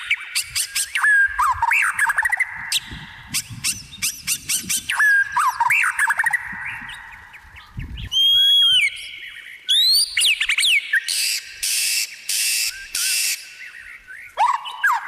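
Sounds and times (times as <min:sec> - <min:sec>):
birds singing whistled notes: 0:00.0 - 0:15.0
harsh bird calls: 0:00.0 - 0:15.0.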